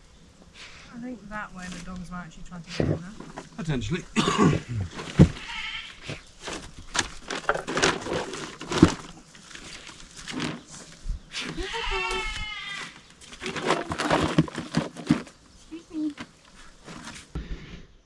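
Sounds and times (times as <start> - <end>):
animal bleat-like cry: 5.4 - 6.0, 11.5 - 13.0.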